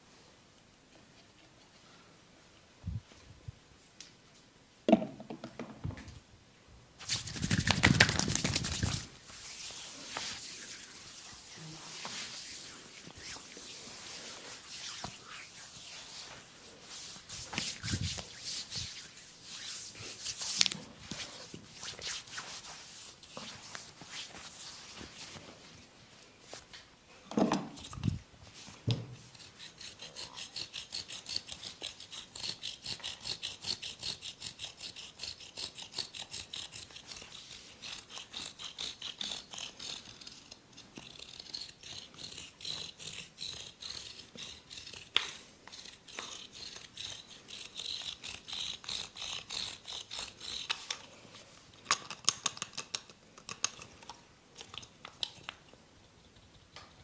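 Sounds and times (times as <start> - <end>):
hands rubbing and scratching: 7.0 - 25.8, 27.8 - 53.8.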